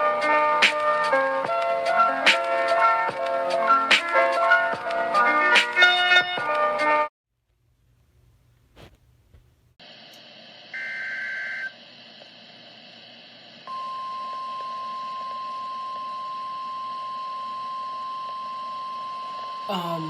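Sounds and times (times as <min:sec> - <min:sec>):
steady warning alarm tone: 0:13.7 - 0:20.0.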